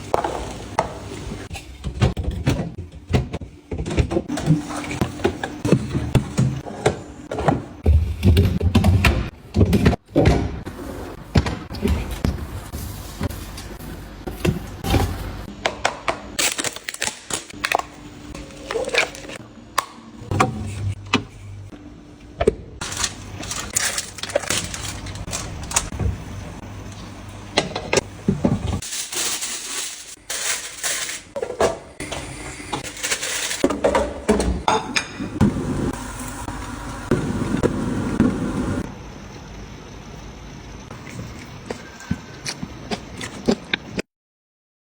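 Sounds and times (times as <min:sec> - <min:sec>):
groceries being handled and set down: 0:11.4 - 0:19.4, 0:22.8 - 0:34.7.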